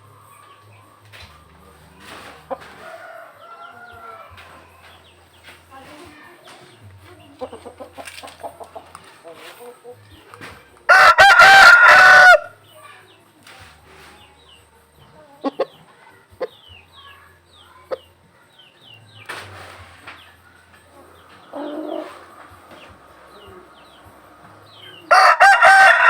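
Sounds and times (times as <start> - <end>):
rooster crowing: 2.5 - 4.8, 10.9 - 12.6, 21.0 - 26.0.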